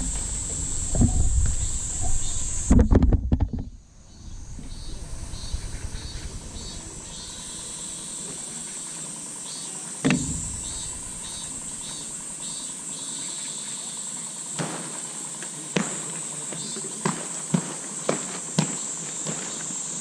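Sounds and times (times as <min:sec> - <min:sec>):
low rumble: 0:00.0 - 0:08.2, 0:10.2 - 0:12.4
insects trilling: 0:00.0 - 0:20.0
sharp knock: 0:10.0 - 0:12.0.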